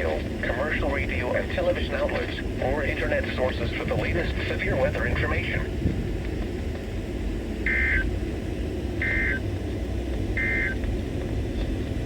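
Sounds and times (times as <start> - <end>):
radio hiss and hum: 0.0 - 5.8, 7.7 - 8.1, 9.0 - 9.4, 10.3 - 10.9
warbling data tone bursts: 7.7 - 8.0, 9.0 - 9.4, 10.4 - 10.8.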